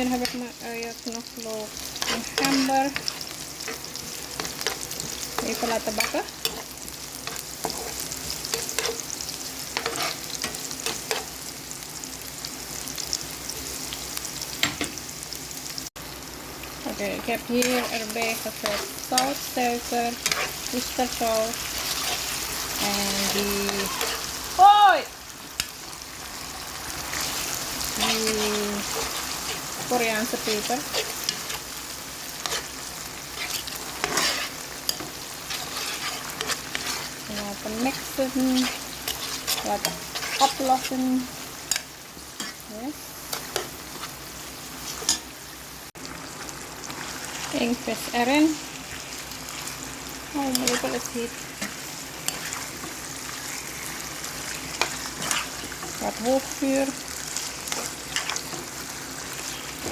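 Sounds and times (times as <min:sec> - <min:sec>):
spoon scraping a pan: 0:00.0 - 0:11.4, 0:17.5 - 0:24.4, 0:27.1 - 0:45.3, 0:46.8 - 0:59.9
vegetables sizzling in a pan: 0:00.0 - 0:59.9
spoon scraping and knocking pan: 0:01.9 - 0:11.3, 0:17.6 - 0:19.5, 0:20.1 - 0:22.5, 0:32.4 - 0:41.1.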